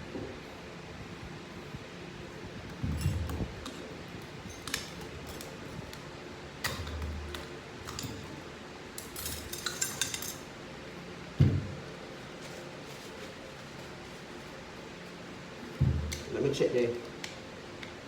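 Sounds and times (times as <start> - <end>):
metal parts clinking: 9.0 - 10.4.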